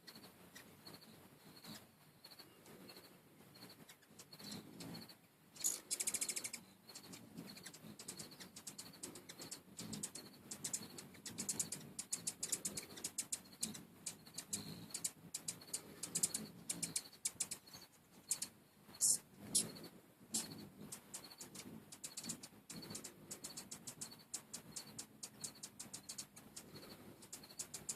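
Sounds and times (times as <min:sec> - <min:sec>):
hovering wings humming: 0:00.0 - 0:27.9
hummingbirds chittering: 0:00.0 - 0:27.9.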